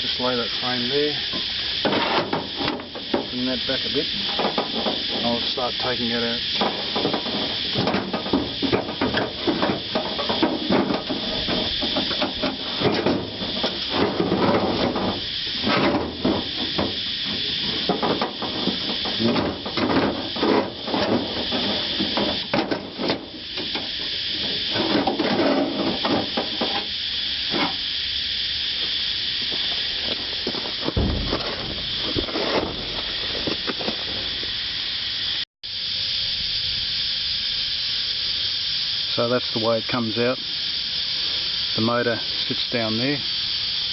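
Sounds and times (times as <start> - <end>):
steady hiss: 0.0 - 43.9
metal clanks and scrapes: 0.6 - 26.9, 30.0 - 34.3.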